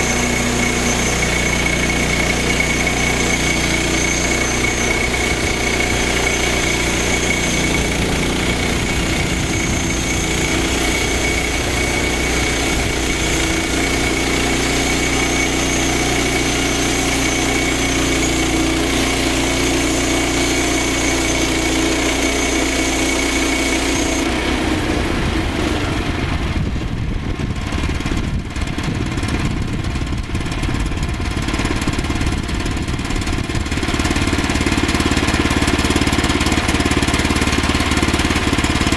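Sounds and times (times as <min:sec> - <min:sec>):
thin high whine: 0:00.0 - 0:24.4
small gas engine running: 0:00.0 - 0:38.9.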